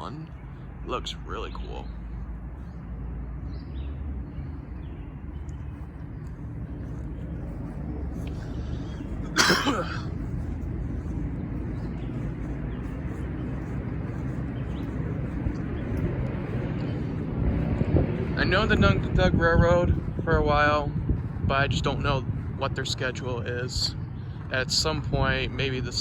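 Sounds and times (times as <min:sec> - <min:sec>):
low outdoor rumble: 0:00.0 - 0:26.0
person coughing: 0:09.2 - 0:10.1.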